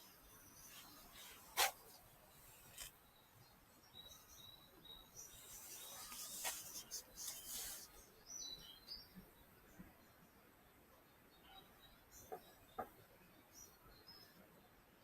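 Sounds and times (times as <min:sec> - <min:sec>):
rustles: 0:00.6 - 0:03.0, 0:05.3 - 0:08.0
faint bird chirps: 0:11.3 - 0:14.5.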